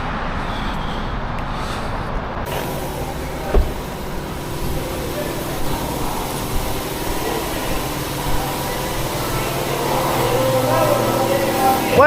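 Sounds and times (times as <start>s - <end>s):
vehicle engine running: 2.4s - 12.0s
thump: 3.4s - 3.9s.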